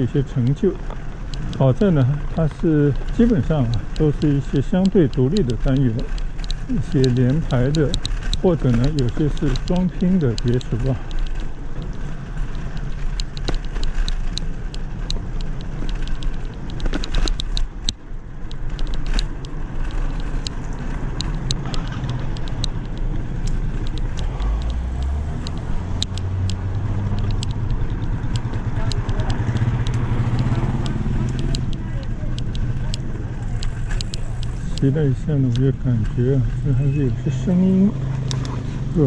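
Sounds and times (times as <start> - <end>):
bicycle clicking and rattling: 0.0 - 39.0
motor vehicle droning: 0.0 - 39.0
road rumble: 0.0 - 39.0
wind: 0.0 - 39.0.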